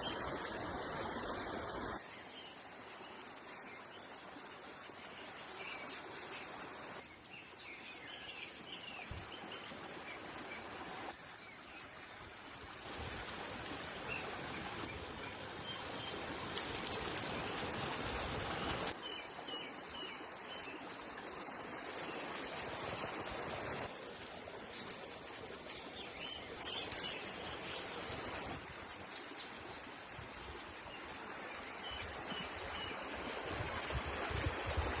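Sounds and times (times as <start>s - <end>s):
small birds chirping: 14.9s - 17.3s, 24.7s - 28.6s.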